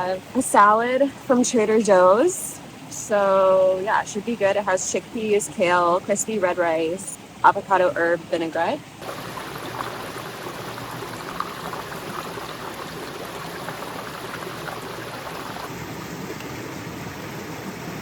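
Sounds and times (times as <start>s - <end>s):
creek water babbling over rocks: 5.6s - 18.0s.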